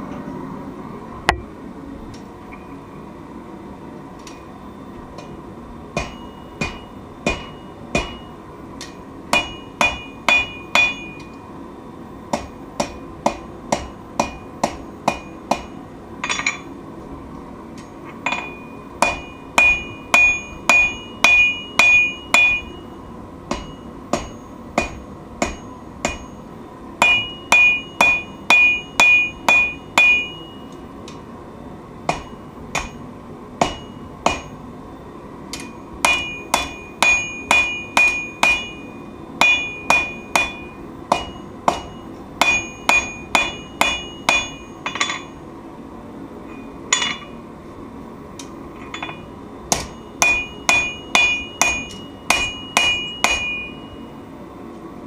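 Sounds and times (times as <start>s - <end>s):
hammer striking steel on anvil: 5.2s - 11.4s, 12.3s - 16.8s, 17.8s - 31.2s, 32.1s - 34.6s, 35.5s - 45.4s, 46.5s - 47.4s, 48.4s - 54.1s.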